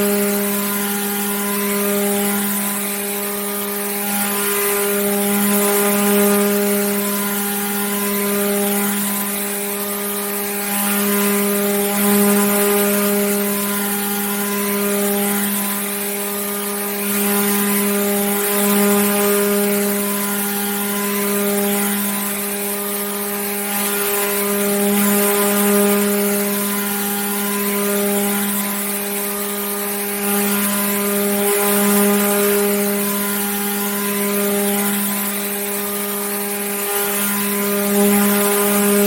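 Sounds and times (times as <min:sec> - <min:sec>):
electric water pump humming: 0:00.0 - 0:39.0.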